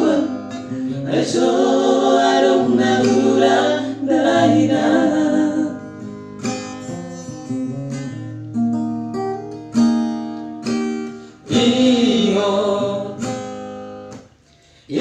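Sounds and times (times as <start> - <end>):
sustained voices: 0.0 - 5.8
acoustic guitar plucking: 0.0 - 15.0.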